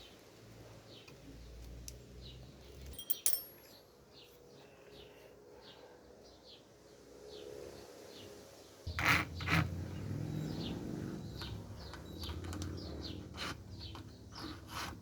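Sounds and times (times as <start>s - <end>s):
sharp metallic clink: 2.9s - 3.8s.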